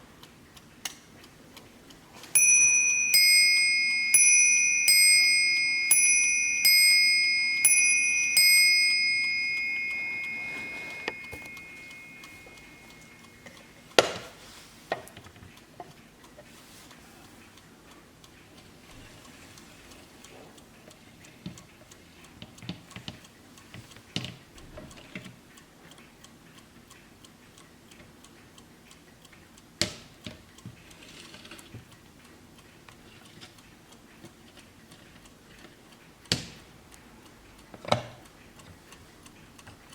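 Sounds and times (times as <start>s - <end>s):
clock ticking: 0.0s - 39.9s
clock striking double bell: 2.4s - 13.3s.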